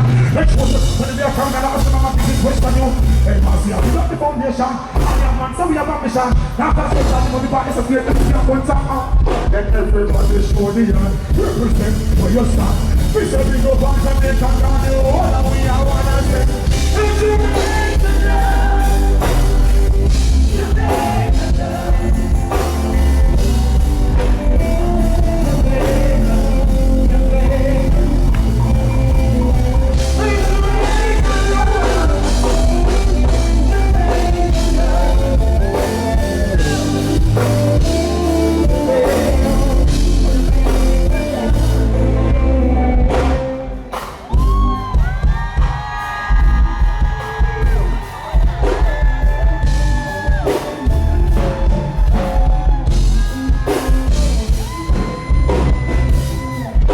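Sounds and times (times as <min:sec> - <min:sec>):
live reggae band: 0:00.0 - 0:56.9
person singing: 0:00.0 - 0:56.9.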